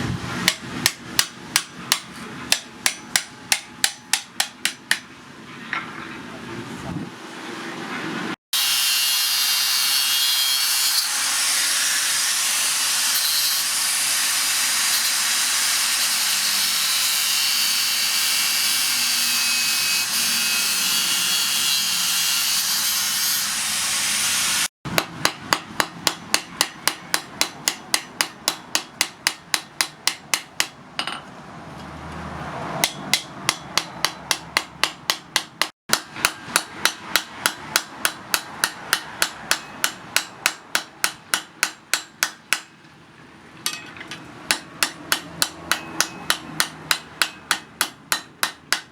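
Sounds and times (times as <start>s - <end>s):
hammer striking steel on anvil: 0.5s - 5.1s, 24.9s - 31.3s, 32.8s - 42.7s, 43.7s - 48.9s.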